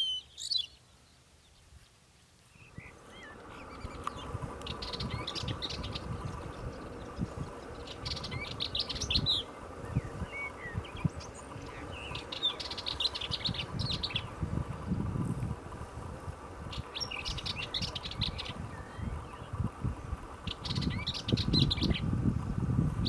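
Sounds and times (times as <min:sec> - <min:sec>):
short bird calls: 0:00.0 - 0:14.4
songbird singing: 0:00.0 - 0:23.0.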